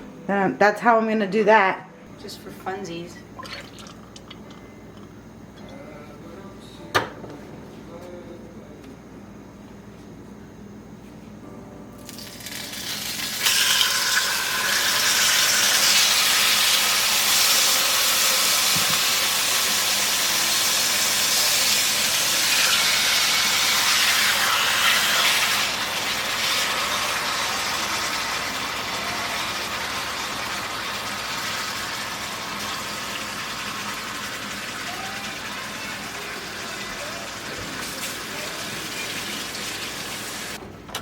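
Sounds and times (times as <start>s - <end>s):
steaks sizzling in a grill pan: 12.2s - 34.9s.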